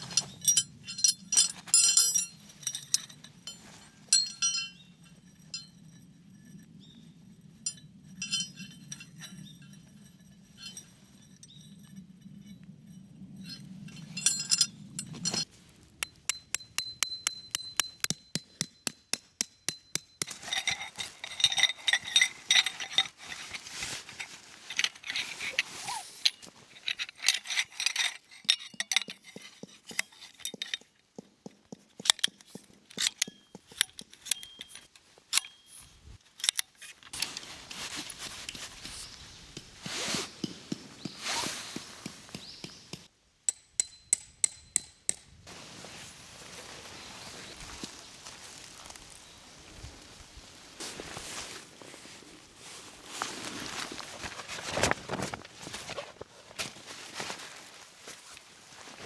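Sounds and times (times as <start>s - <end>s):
light clinks and clicks: 0.0s - 39.8s.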